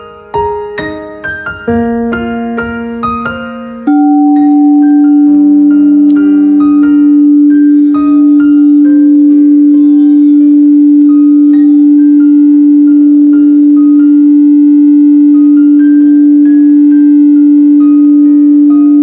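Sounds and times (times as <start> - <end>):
bell-like melody notes: 3.9 - 9.0
singing bowl pure tone: 3.9 - 14.1.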